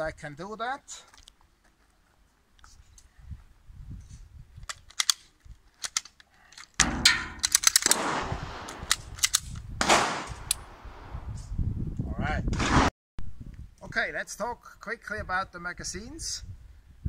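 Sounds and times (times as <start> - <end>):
pistol slide clicks and knocks: 4.6 - 6.2, 6.8 - 8.0, 8.8 - 9.6
loud gunshot: 6.8 - 8.9, 9.8 - 11.2, 12.5 - 12.9.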